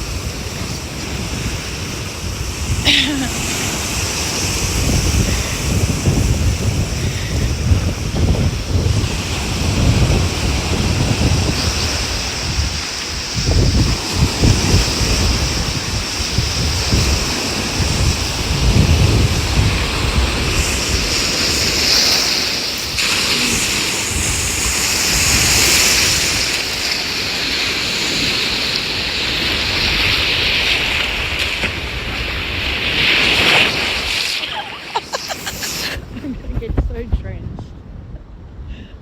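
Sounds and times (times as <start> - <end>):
ocean waves at shore: 0.0 - 37.2
wind buffeting microphone: 0.0 - 39.0.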